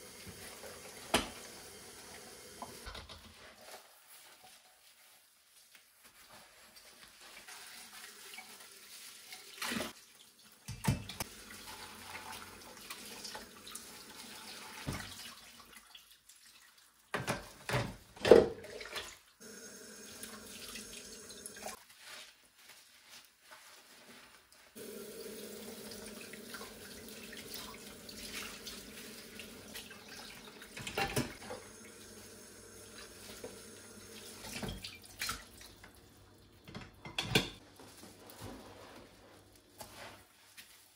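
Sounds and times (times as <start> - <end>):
dishes knocking and clinking: 30.8 - 31.6, 36.7 - 37.6.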